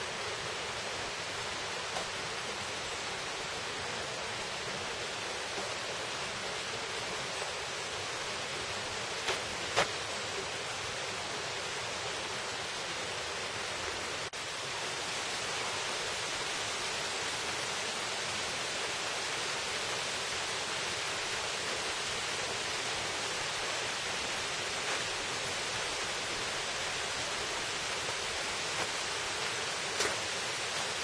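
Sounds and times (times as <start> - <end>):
stream water rushing: 0.0 - 31.0.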